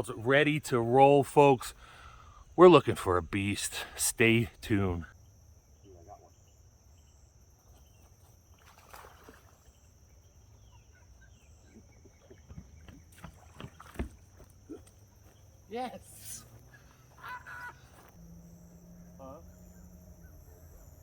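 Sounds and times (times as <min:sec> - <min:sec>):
faint chirps: 0:14.6 - 0:21.0.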